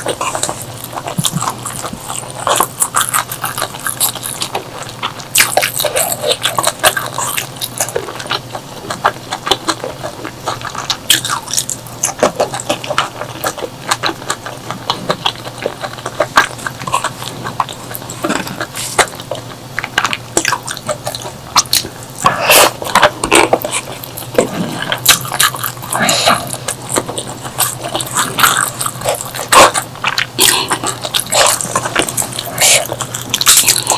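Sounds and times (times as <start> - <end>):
person chewing and biting: 0.0 - 33.9.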